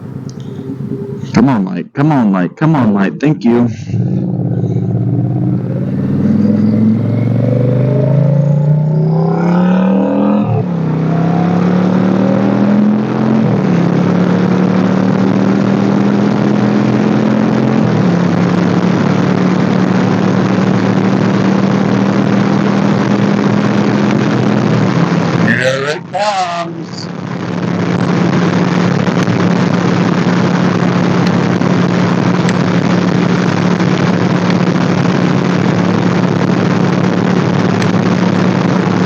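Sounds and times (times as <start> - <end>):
motorcycle engine accelerating: 0.0 - 1.6, 3.7 - 39.0
wind noise on microphone: 27.1 - 39.0.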